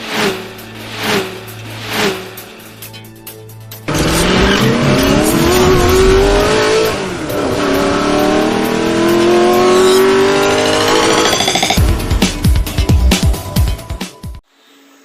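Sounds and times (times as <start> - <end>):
car engine accelerating hard: 3.9 - 11.8.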